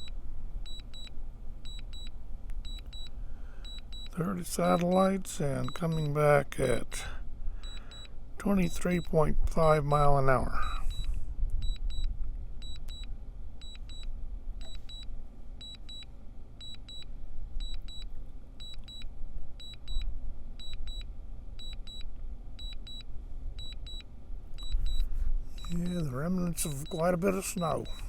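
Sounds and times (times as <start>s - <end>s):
remote controller beeping: 3.7s - 6.8s, 7.6s - 9.8s, 14.6s - 16.0s, 24.6s - 28.0s
wind rumble on microphone: 9.3s - 14.7s.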